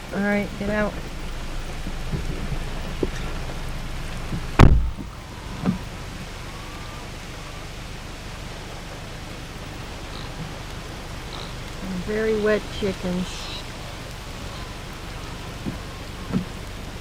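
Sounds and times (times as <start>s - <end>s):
heavy rain: 0.0s - 17.0s
vehicle door slamming: 1.8s - 5.8s.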